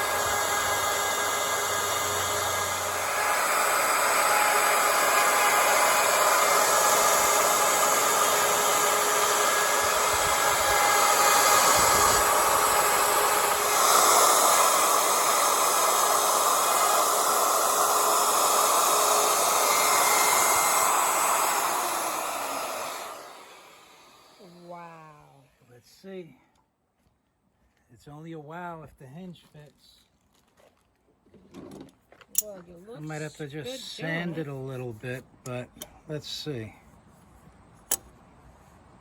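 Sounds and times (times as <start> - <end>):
router cutting wood: 0.0 - 24.7.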